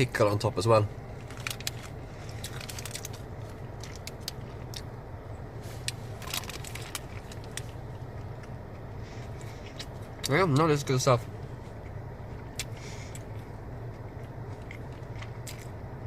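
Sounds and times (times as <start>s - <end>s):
steady low hum: 0.0s - 16.0s
man chewing food: 5.8s - 10.2s, 11.4s - 15.8s.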